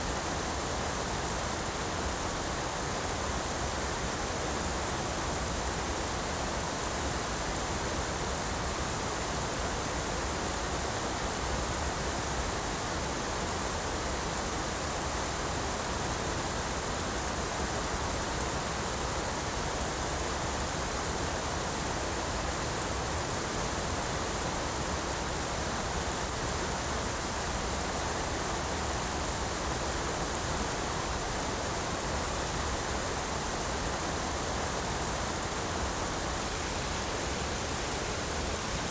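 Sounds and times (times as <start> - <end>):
waterfall rushing: 30.4 - 38.9.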